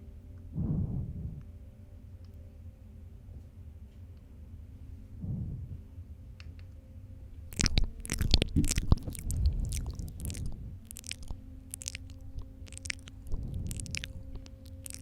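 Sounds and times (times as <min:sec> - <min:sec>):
lip smacks: 0:07.5 - 0:15.0
saliva clicks: 0:07.5 - 0:15.0.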